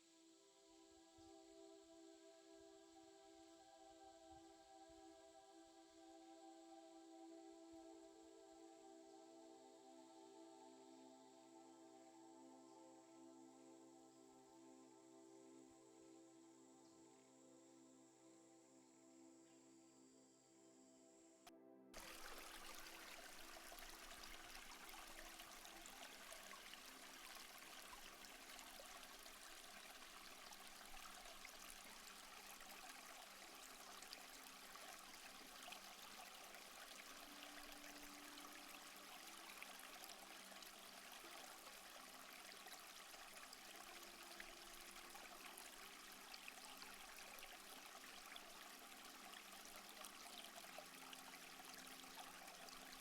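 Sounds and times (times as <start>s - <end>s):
trickling stream: 21.9s - 53.0s.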